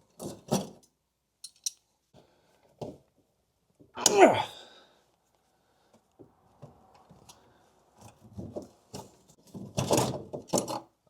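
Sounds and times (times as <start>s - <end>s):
hand tools clicking and rattling: 1.4s - 1.8s.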